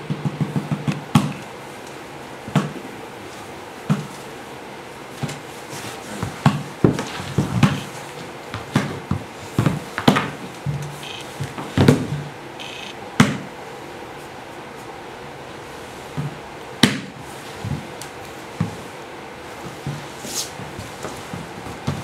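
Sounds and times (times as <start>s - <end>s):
high squeaks: 11.0s - 11.2s, 12.6s - 13.0s.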